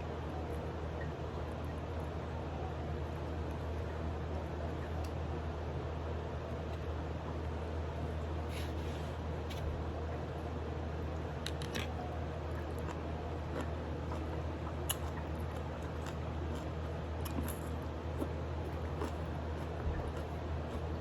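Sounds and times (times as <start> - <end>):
steady low hum: 0.0 - 21.0
wet chewing and nibbling: 11.5 - 21.0.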